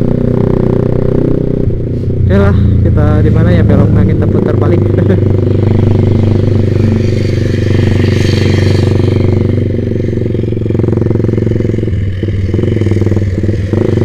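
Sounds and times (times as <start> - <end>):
motorcycle engine running at low revs: 0.0 - 14.0.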